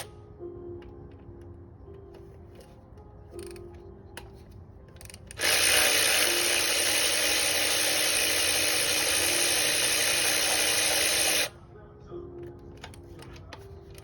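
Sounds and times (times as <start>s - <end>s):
power tool whirring: 5.1s - 11.5s.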